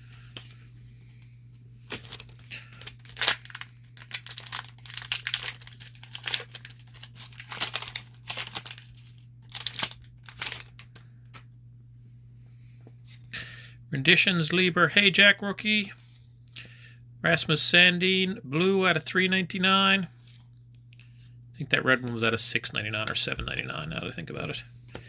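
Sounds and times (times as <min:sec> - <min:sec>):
low electrical hum: 0:00.0 - 0:25.0
foil pack crackling and tearing: 0:01.9 - 0:11.4.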